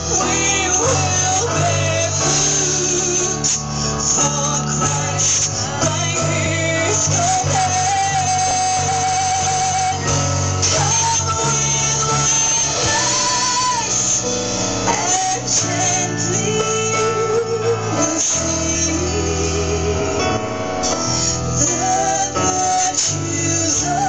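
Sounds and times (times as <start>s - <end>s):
woman singing with vibrato: 0.0s - 20.4s, 21.6s - 24.0s
band playing: 0.0s - 24.0s
bass line: 0.0s - 24.0s.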